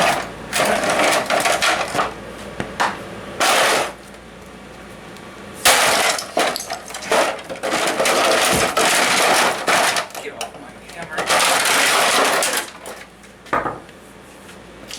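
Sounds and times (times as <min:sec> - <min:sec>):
blows smashing a fan: 0:05.6 - 0:10.4.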